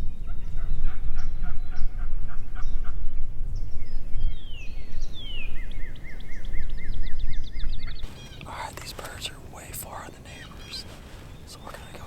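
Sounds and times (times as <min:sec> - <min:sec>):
distant calls: 0:07.6 - 0:12.0.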